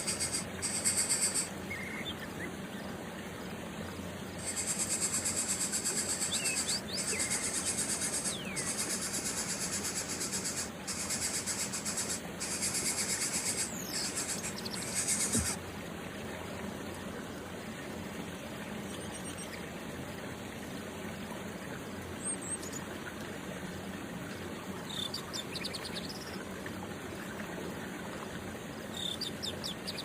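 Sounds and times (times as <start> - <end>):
insects chirring: 4.4 - 15.6
thin falling bird calls: 4.4 - 15.6.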